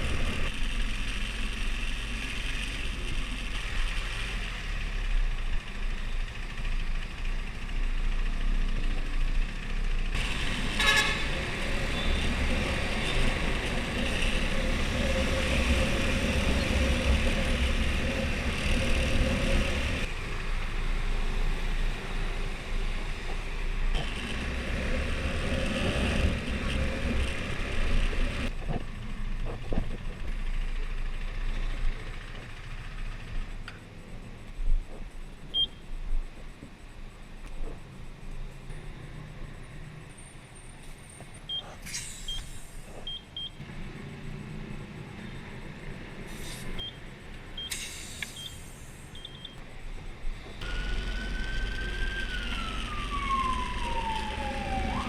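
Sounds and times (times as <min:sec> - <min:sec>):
road and wind noise: 0:00.0 - 0:55.0
vehicle horn toot: 0:10.7 - 0:12.3.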